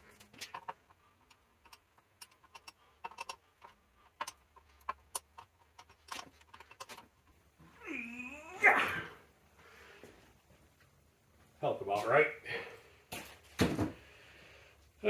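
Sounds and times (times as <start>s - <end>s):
light metal clicks and ticks: 0.0s - 7.4s.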